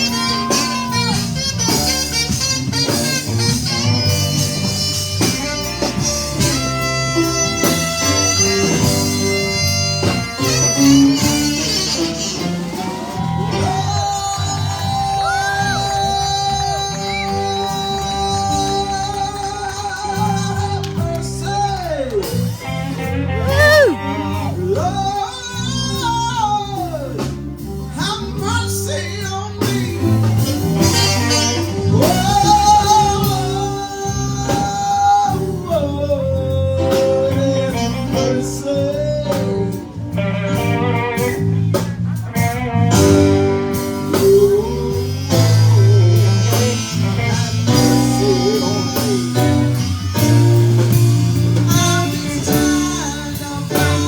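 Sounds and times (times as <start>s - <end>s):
lead guitar bent notes: 0.0s - 21.0s, 39.4s - 54.0s
blues band playing: 0.0s - 54.0s.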